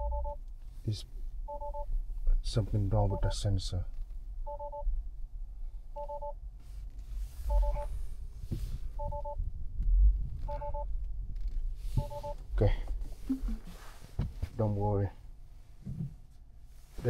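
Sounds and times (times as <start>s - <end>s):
two-tone warning chime: 7.5s - 7.9s, 9.0s - 9.4s, 12.0s - 12.4s.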